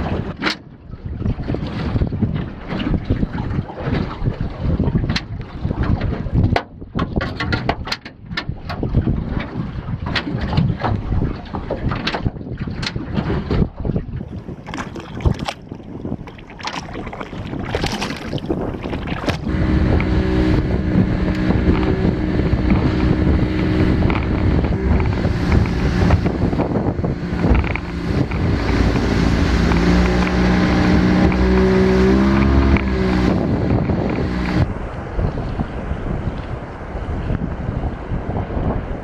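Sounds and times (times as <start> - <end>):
wind buffeting microphone: 0.0 - 39.0
boat motor running: 12.9 - 38.7.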